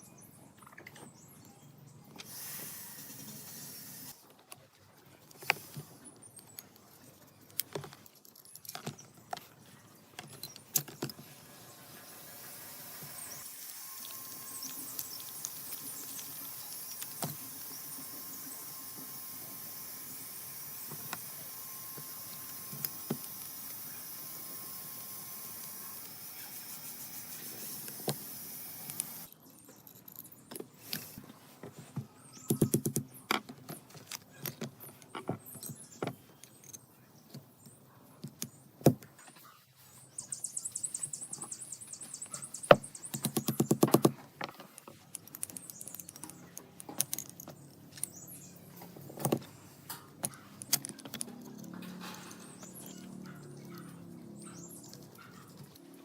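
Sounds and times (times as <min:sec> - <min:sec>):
sharp clicks and knocks: 0:32.4 - 0:39.1, 0:42.6 - 0:52.9.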